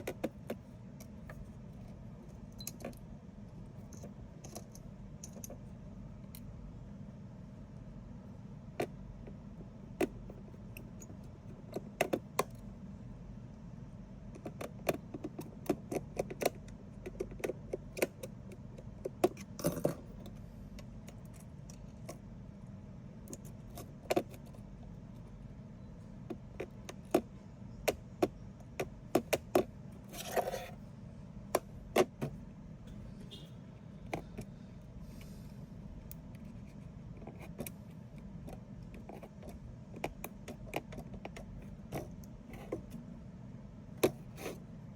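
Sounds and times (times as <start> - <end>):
steady low hum: 0.0 - 44.9.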